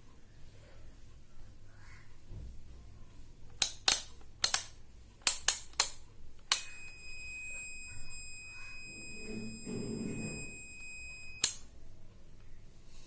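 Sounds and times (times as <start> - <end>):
sharp clicks: 3.6 - 6.8, 11.4 - 11.7
high-pitched buzzer beep: 6.5 - 11.6.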